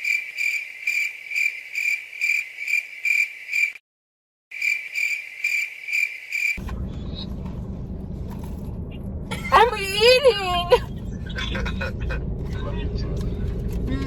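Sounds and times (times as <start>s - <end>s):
cricket chirping: 0.0s - 3.8s, 4.5s - 6.6s
car cabin rumble: 6.6s - 14.0s.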